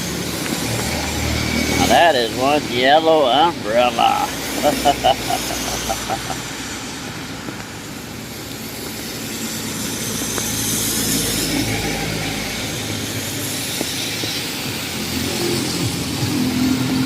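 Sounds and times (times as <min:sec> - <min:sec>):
traffic on wet road: 0:00.0 - 0:17.0.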